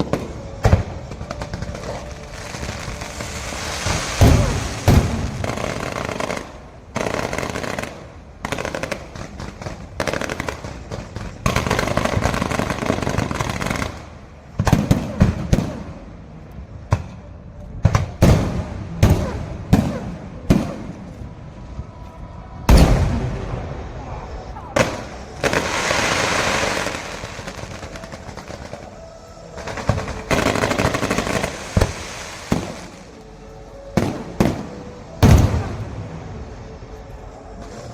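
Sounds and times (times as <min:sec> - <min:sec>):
fireworks bangs: 0:00.0 - 0:16.0, 0:24.8 - 0:33.2, 0:33.9 - 0:36.2
fireworks crackling: 0:00.0 - 0:16.3, 0:22.8 - 0:37.9.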